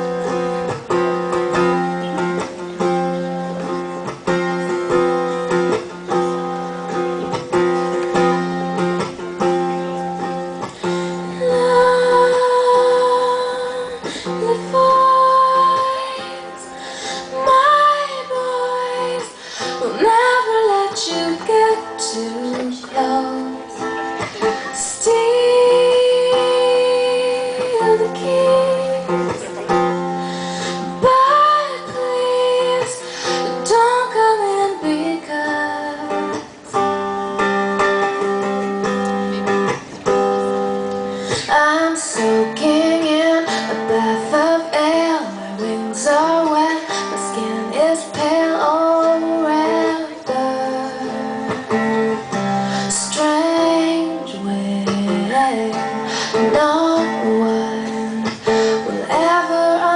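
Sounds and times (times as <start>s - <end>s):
guitar: 0.0s - 59.9s
woman singing: 10.2s - 36.8s, 41.2s - 59.9s.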